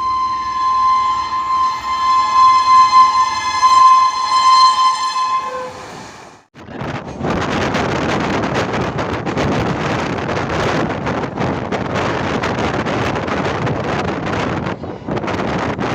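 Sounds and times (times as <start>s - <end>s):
train horn blast: 0.0s - 6.1s
wind on microphone: 6.6s - 15.9s.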